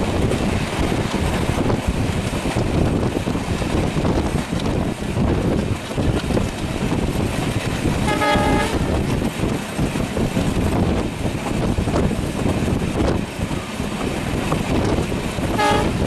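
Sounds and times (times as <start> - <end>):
train wheels clattering on rail: 0.0 - 16.0
short train horn toot: 8.0 - 8.8, 15.5 - 16.0.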